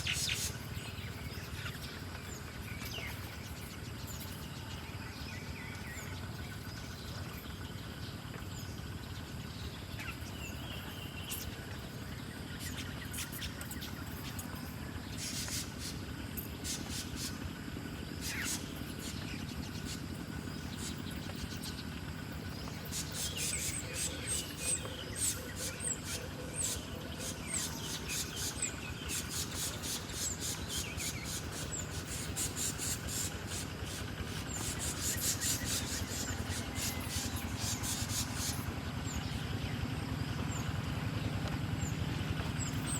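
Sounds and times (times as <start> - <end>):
low outdoor rumble: 0.0 - 42.9
small birds chirping: 0.0 - 42.9.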